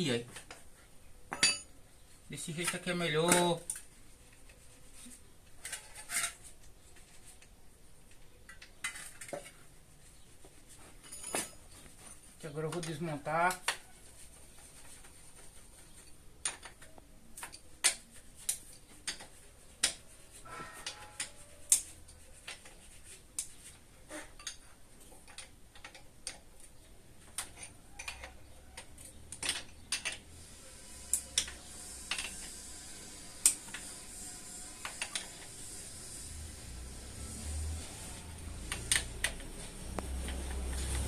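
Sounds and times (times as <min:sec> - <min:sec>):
hand tools clinking against metal: 0:01.3 - 0:01.7, 0:10.9 - 0:13.1.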